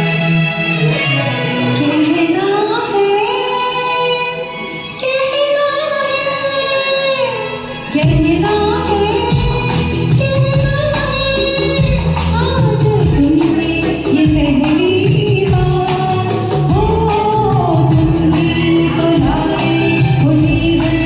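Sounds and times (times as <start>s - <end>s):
film song karaoke music: 0.0s - 21.0s
drums and bass: 8.0s - 21.0s.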